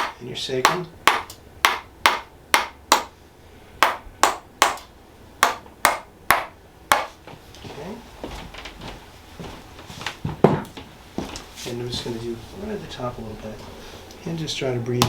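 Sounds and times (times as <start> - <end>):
wooden mallet tapping wooden wedge: 0.0 - 3.1, 3.8 - 7.1.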